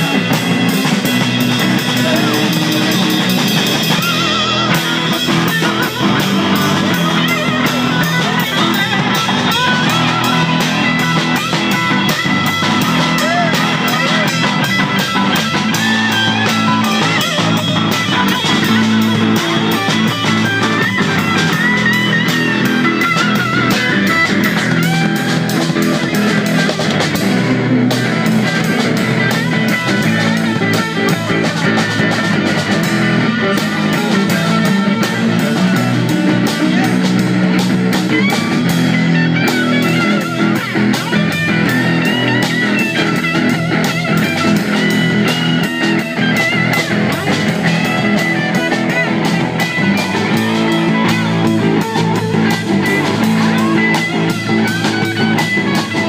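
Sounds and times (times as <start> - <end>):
drums playing steady beat: 0.0 - 56.0
guitar lines: 0.0 - 56.0.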